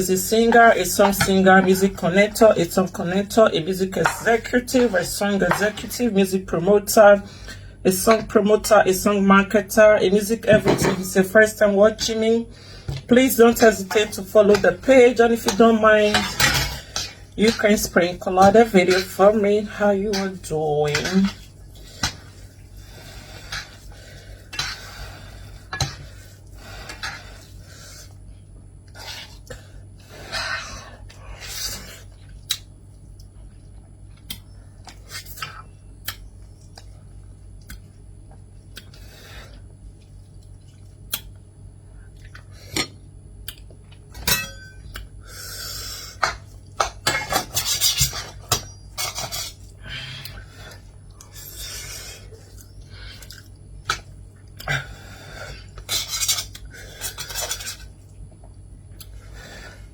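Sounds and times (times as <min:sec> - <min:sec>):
low steady hum: 0:00.0 - 0:59.9
cutlery clinking against a dish: 0:44.2 - 0:44.9, 0:55.9 - 0:57.9.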